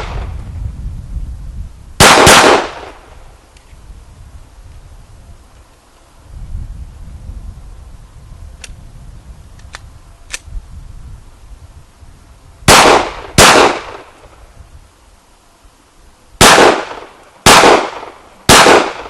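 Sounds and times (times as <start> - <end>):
pistol shots with echo: 2.0 - 3.0, 12.7 - 14.1, 16.4 - 19.0.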